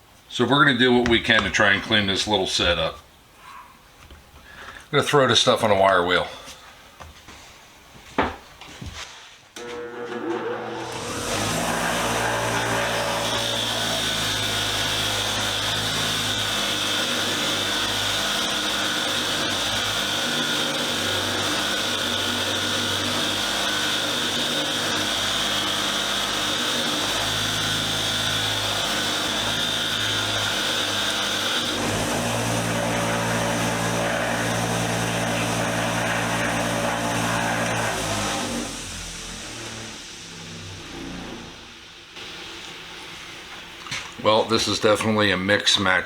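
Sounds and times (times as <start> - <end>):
wire wheel grinding steel: 9.6 - 41.8.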